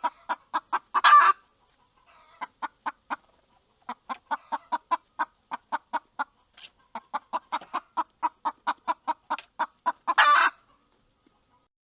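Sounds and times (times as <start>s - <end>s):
rooster clucking: 0.0s - 11.7s.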